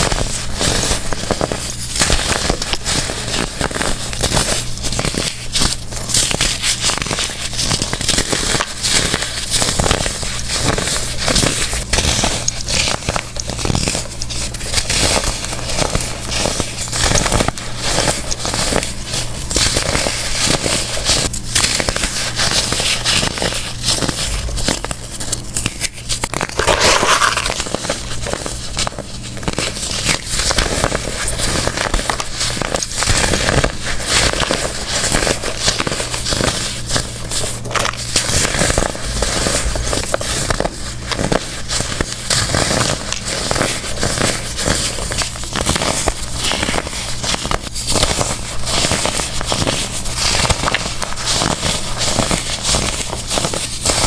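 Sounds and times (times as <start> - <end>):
baking soda blocks crunching: 0.7 - 36.9.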